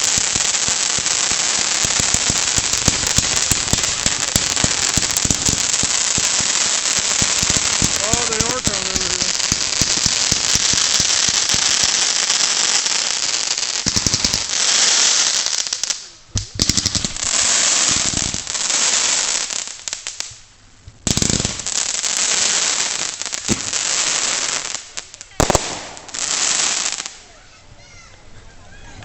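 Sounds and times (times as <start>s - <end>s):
fireworks crackling and hissing: 0.0s - 29.0s
fireworks deep thumps: 1.9s - 11.9s.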